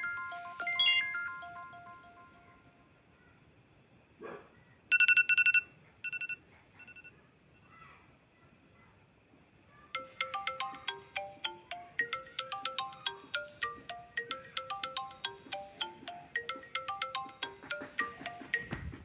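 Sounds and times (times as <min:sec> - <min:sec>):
phone ringtone marimba notes: 0:00.0 - 0:02.6, 0:10.0 - 0:19.0.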